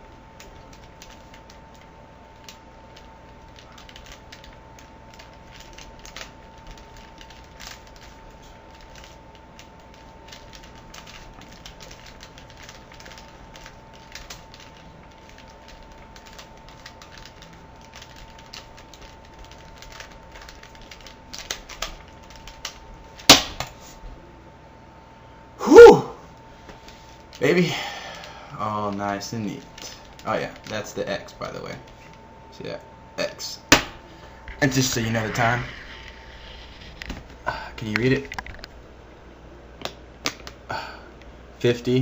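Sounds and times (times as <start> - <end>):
puzzle cube clicking and rattling: 0.4 - 22.8.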